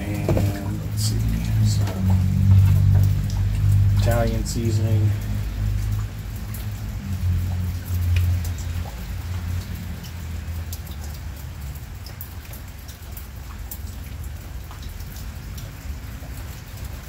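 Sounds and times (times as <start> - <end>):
low rumble: 0.0 - 9.6
heavy rain: 0.0 - 17.0.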